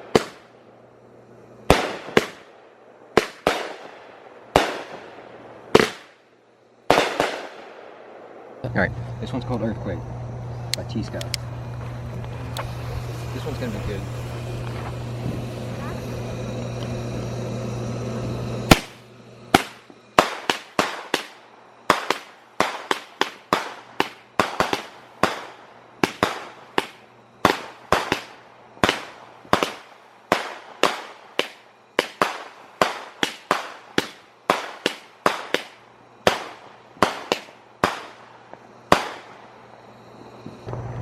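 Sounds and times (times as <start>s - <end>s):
firework cake bangs: 5.7s - 6.2s, 18.7s - 39.4s.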